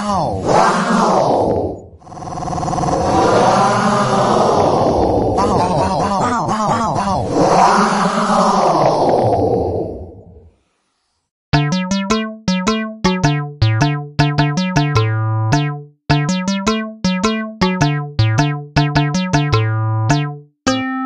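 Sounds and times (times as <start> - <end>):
bouncy synthesizer cartoon jingle: 11.5 - 21.0.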